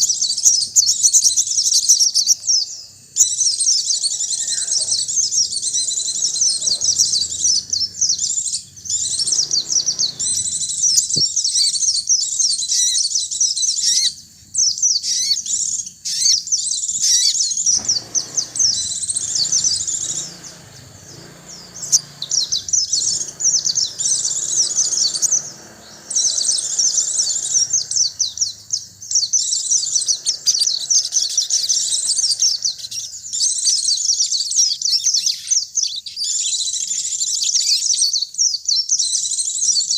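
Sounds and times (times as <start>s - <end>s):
birds chirping and twittering: 0.0s - 39.9s.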